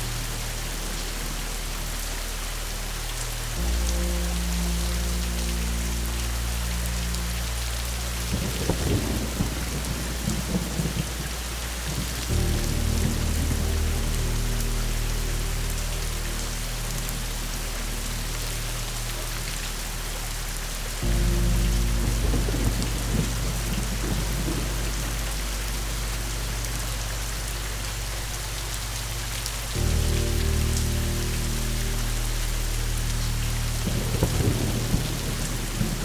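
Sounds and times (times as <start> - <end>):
low music drone: 0.0 - 36.0
steady rain: 0.0 - 36.0
rumbling thunder: 8.2 - 15.8, 21.0 - 36.0.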